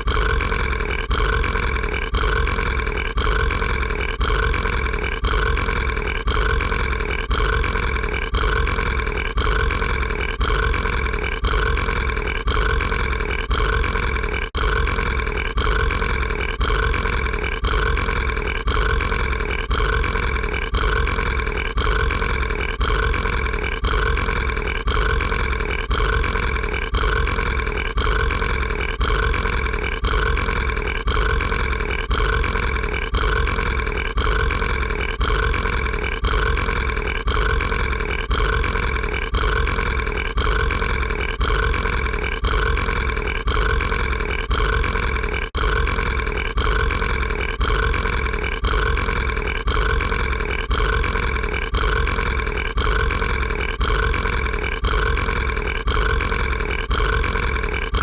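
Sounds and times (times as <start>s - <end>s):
cartoon monster burp: 0.0s - 58.0s.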